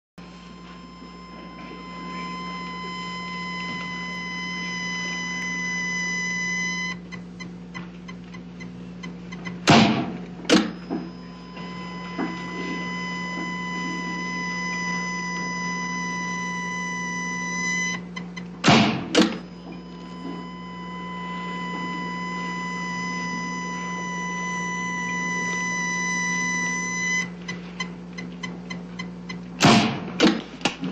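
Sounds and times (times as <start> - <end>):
defibrillator charging tone: 0.2 - 30.4
defibrillator shock jolts: 9.6 - 10.8, 18.6 - 20.4.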